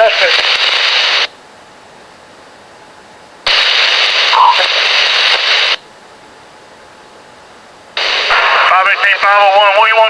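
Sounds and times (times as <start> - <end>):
loud burst of radio static: 0.0 - 1.3, 3.5 - 5.8, 8.0 - 10.0
radio scanner hiss: 0.0 - 1.4, 3.4 - 5.9, 8.0 - 10.0.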